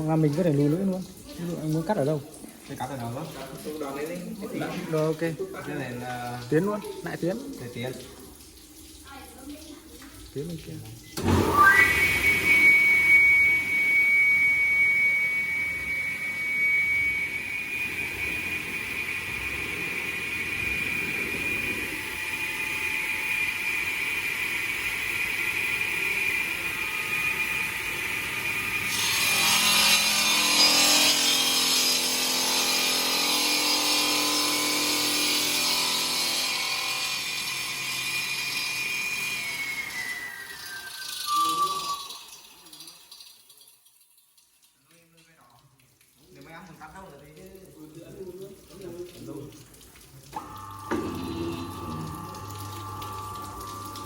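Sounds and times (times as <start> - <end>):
saw cutting into stone: 11.2 - 42.2, 50.4 - 52.2
stone saw blade whining: 11.2 - 42.6.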